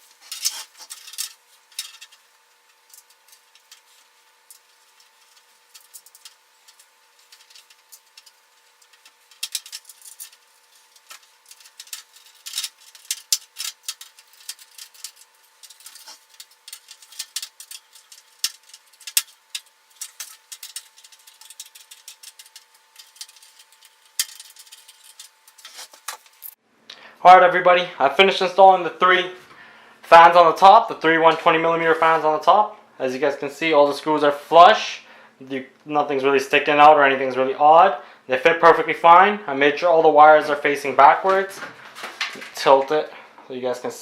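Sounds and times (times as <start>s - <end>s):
screws rattling on metal case: 4.5s - 26.1s.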